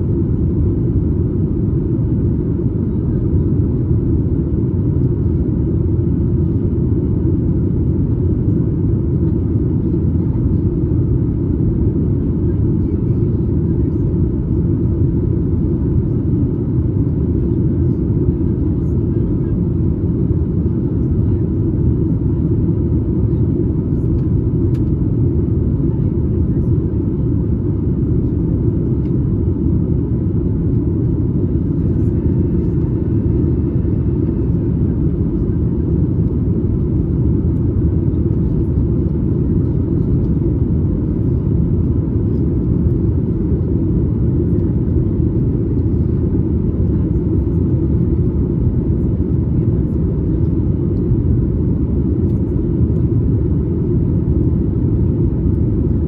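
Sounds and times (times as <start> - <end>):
airplane cabin drone: 0.0 - 56.0.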